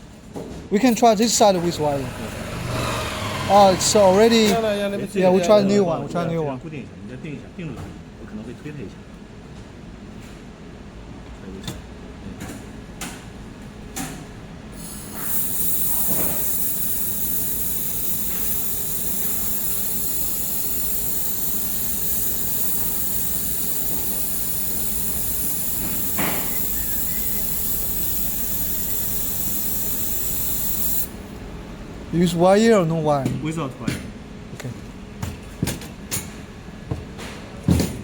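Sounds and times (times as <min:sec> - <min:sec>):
laser welder hissing: 0:03.6 - 0:05.7, 0:14.8 - 0:31.4.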